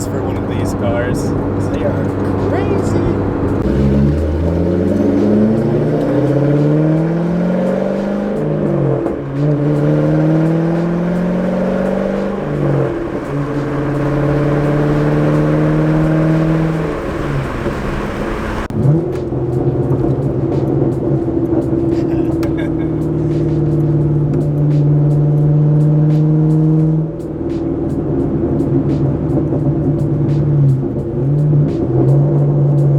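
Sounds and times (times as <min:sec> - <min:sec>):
car engine accelerating: 0:00.0 - 0:32.9.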